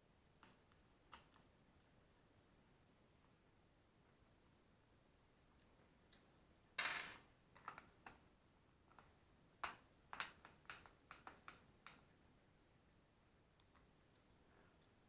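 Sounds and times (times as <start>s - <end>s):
light sharp clicks and taps: 0.4s - 1.5s, 7.6s - 12.2s, 13.5s - 15.0s.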